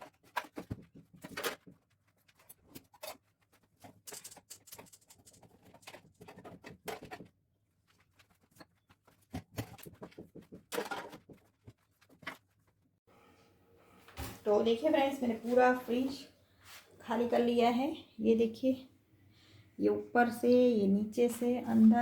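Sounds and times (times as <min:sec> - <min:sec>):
food containers clattering: 0:09.4 - 0:11.6.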